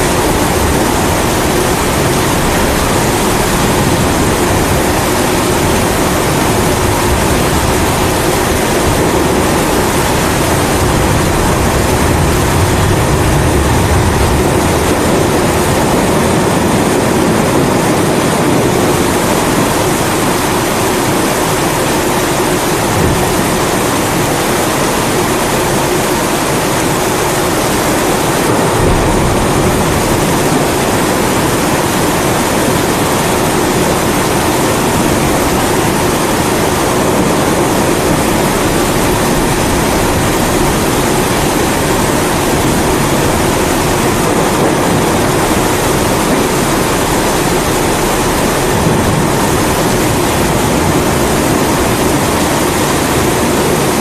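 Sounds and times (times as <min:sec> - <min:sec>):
pressure stove roaring: 0:00.0 - 0:17.4
steady rain: 0:00.0 - 0:54.0
thunder rumbling: 0:00.0 - 0:54.0.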